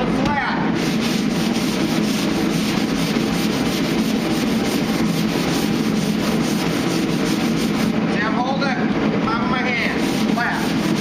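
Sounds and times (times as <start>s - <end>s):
sandpaper rubbing on metal panel: 0.8s - 8.1s, 9.6s - 11.0s.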